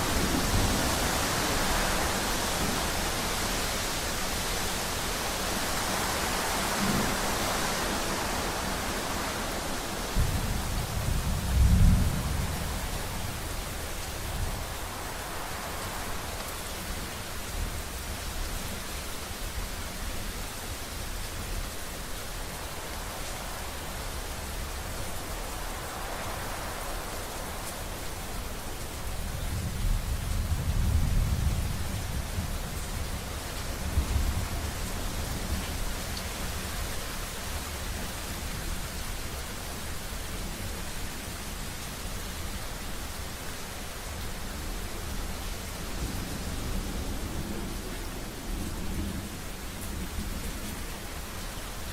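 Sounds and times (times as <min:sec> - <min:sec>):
steady rain: 0:00.0 - 0:51.9
low rolling thunder: 0:06.3 - 0:16.3, 0:23.6 - 0:35.7.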